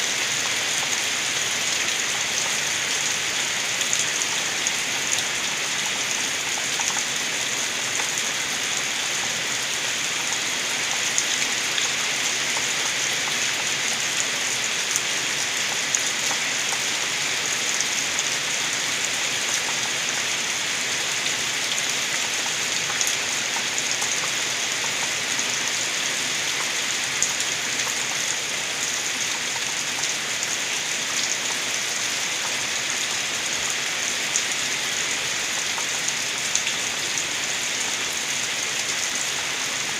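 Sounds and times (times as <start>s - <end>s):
rain falling steadily: 0.0s - 39.9s
rainwater gurgling: 0.0s - 39.9s.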